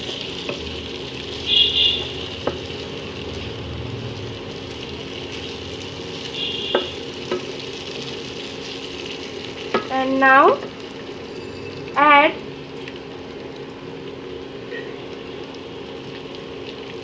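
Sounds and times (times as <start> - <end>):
food sizzling in a pan: 0.0 - 17.0
sharp knocks against pan: 6.7 - 7.5.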